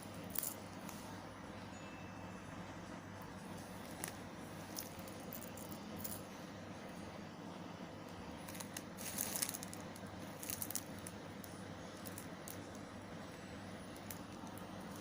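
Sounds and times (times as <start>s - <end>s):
steady low hum: 0.0s - 15.0s
plastic packaging crinkling: 8.5s - 9.8s.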